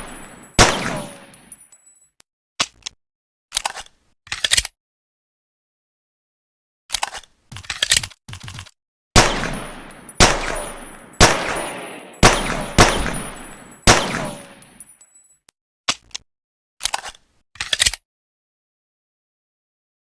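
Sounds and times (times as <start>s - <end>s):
pistol shots echoing: 0.0s - 1.4s, 9.2s - 14.8s.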